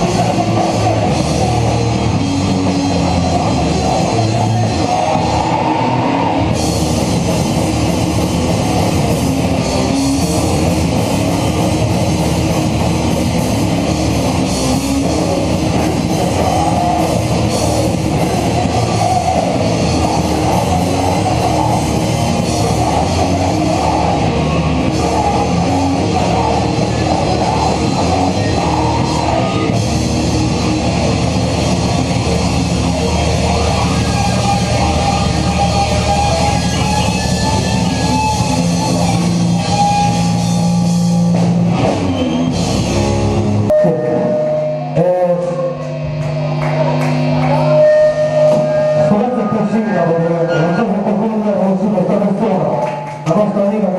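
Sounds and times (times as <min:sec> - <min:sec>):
metal band playing: 0:00.0 - 0:53.9.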